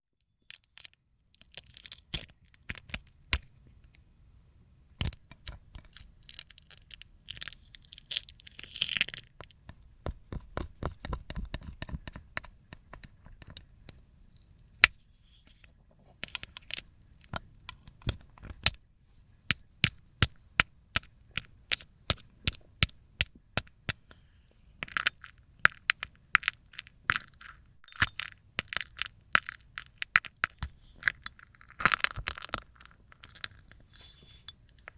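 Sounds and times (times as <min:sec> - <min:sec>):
dried slime cracking and tearing: 0:05.4 - 0:09.3.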